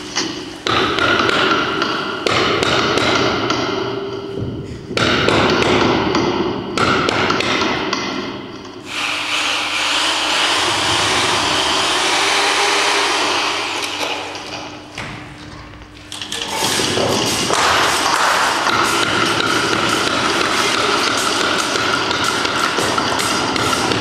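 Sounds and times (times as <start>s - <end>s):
rushing grinding noise: 10.0s - 14.4s.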